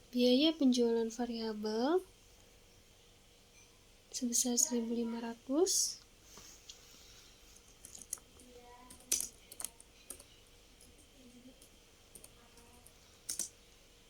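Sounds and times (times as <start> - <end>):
computer keyboard typing: 7.8 - 13.6.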